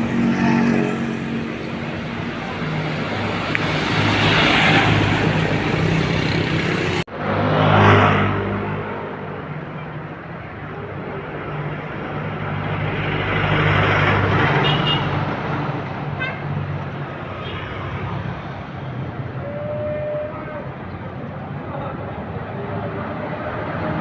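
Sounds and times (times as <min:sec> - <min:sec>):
bus engine running: 0:00.0 - 0:07.1
road and traffic noise: 0:00.0 - 0:24.0.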